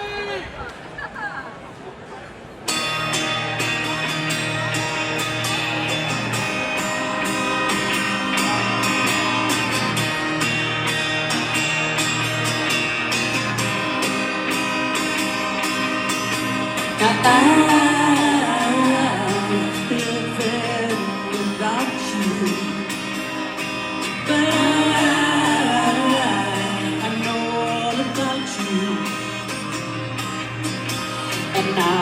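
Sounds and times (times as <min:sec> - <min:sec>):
live rock band playing: 0:02.7 - 0:32.0
woman singing lead vocal: 0:16.8 - 0:23.2, 0:24.0 - 0:29.5, 0:31.3 - 0:32.0.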